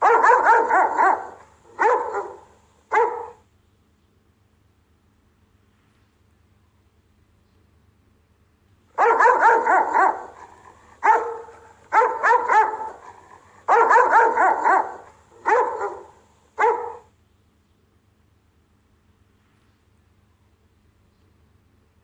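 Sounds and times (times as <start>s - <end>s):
dog barking: 0.0s - 3.4s, 9.0s - 17.1s.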